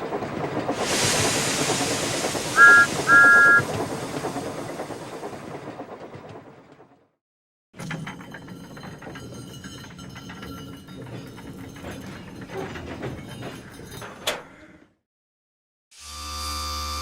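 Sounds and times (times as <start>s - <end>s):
train wheels clattering: 0.0s - 7.0s, 7.8s - 14.5s
steam hissing: 0.6s - 5.6s
two-note train whistle toots: 2.6s - 3.6s.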